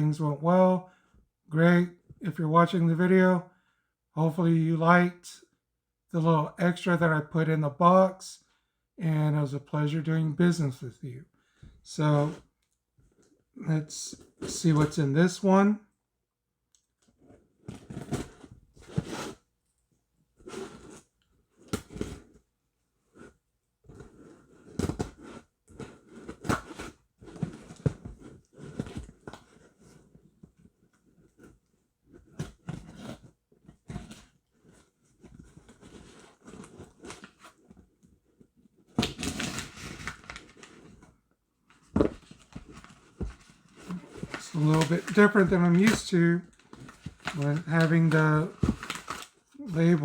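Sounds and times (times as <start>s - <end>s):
knife cutting cardboard box: 17.6s - 19.4s, 20.4s - 22.4s, 23.2s - 38.2s, 38.9s - 41.0s, 41.9s - 50.0s
knife cutting packing tape: 39.0s - 40.6s, 43.9s - 49.3s
cardboard rustling and knocks: 41.8s - 49.3s.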